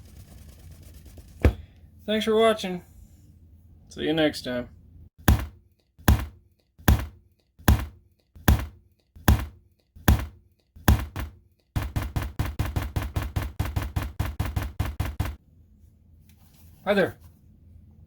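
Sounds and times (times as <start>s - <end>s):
heavy rhythmic thumps: 5.3s - 15.4s.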